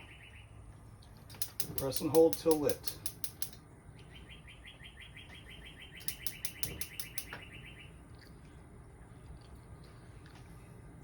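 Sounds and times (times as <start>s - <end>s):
gas burner igniter clicking: 1.3s - 3.6s, 6.0s - 7.4s.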